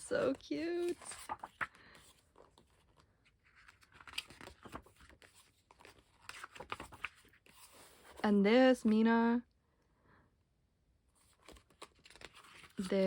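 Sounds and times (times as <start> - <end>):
paper pages rustling: 0.0 - 8.2, 11.2 - 13.0.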